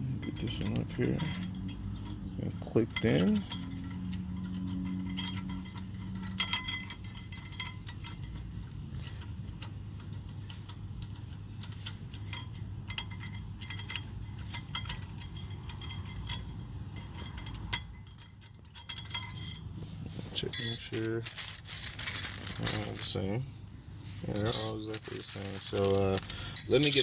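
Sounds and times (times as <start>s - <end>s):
steady low hum: 11.2s - 27.0s.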